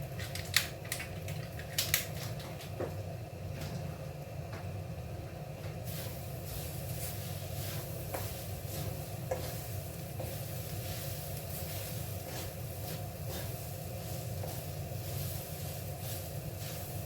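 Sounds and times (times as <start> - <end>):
beans sizzling in a pan: 5.8 - 17.0
spatula scraping a pan: 5.9 - 17.0.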